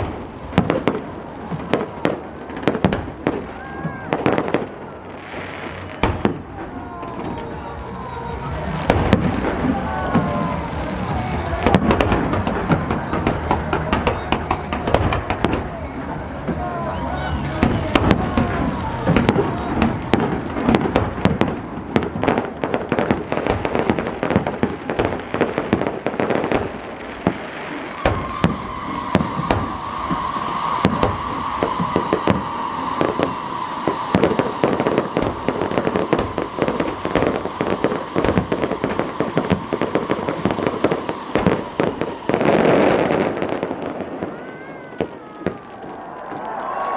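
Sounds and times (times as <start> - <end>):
fireworks crackling bangs: 0.0 - 46.9
high whistle: 16.6 - 18.4, 27.7 - 43.5.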